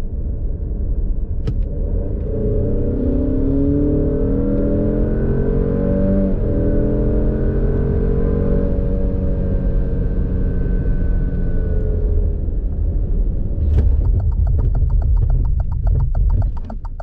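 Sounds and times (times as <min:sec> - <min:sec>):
car engine accelerating hard: 0:01.5 - 0:17.0
gear upshift: 0:13.6 - 0:17.0.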